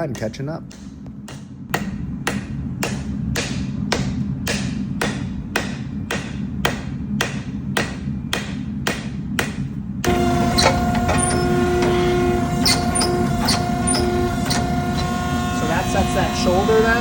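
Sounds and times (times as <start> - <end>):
hammer striking steel on anvil: 0.0 - 9.8.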